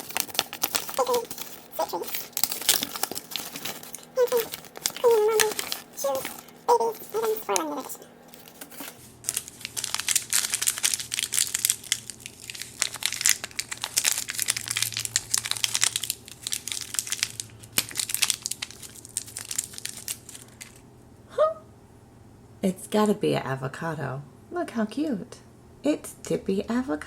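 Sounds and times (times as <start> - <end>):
plastic wrapping crinkling: 0.0 - 20.8.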